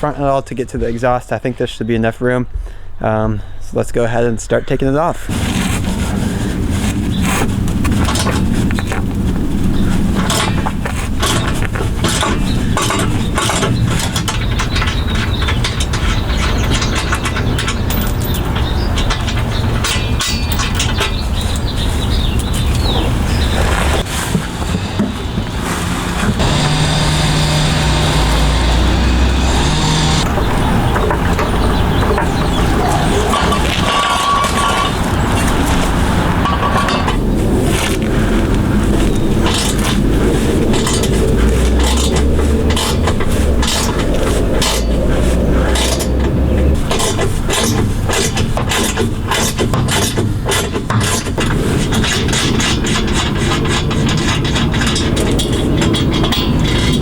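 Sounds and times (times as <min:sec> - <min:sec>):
steady low hum: 0:05.1 - 0:48.1
steady low rumble: 0:05.2 - 0:48.0
metallic clinks of hand tools: 0:12.2 - 0:21.6.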